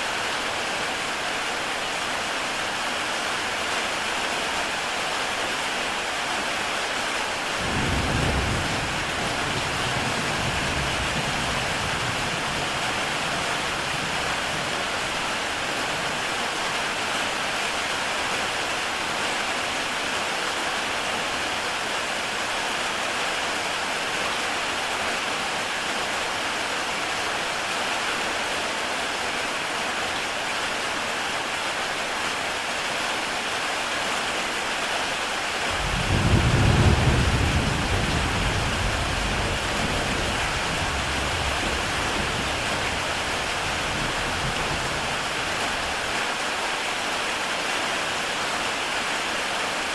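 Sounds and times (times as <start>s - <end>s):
heavy rain on a tile roof: 0.0s - 49.9s
thunder rumble: 35.7s - 46.0s.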